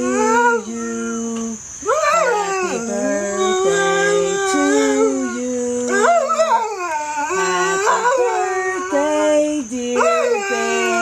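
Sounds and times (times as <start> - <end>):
dog howling: 1.8 - 9.2, 10.0 - 11.0.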